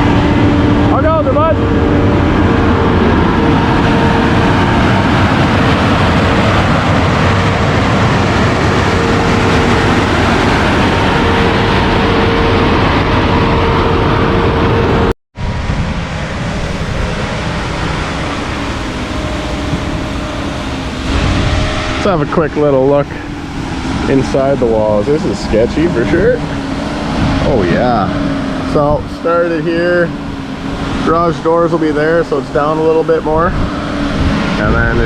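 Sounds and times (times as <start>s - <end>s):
diesel trucks droning: 0.0s - 35.0s.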